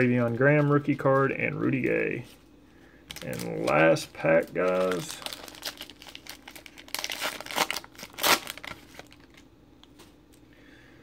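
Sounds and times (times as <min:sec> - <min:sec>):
foil wrapper tearing and crinkling: 0:03.1 - 0:09.4.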